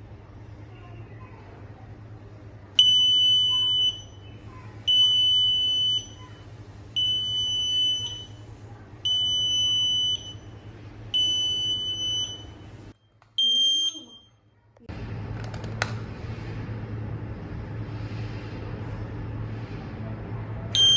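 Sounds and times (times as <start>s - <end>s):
smoke alarm beeping: 2.8s - 4.3s, 4.9s - 8.4s, 9.0s - 14.5s.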